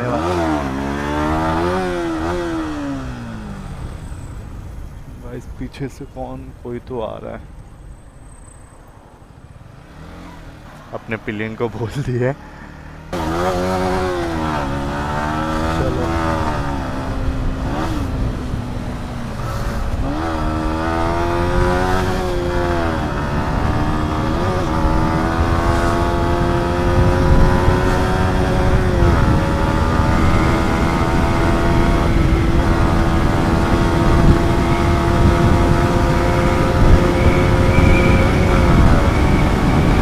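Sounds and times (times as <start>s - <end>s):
motorcycle engine accelerating: 0.0s - 5.0s, 12.2s - 40.0s.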